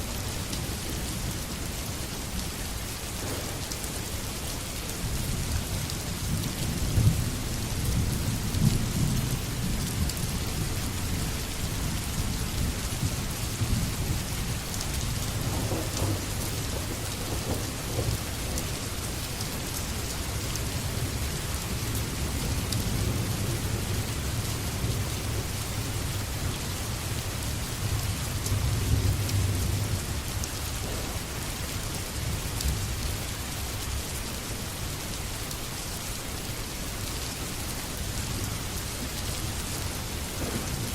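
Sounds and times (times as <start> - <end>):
steady rain falling: 0.0 - 40.9
low thunder rumble: 3.2 - 3.8, 6.7 - 18.9, 27.2 - 33.0, 40.2 - 40.9.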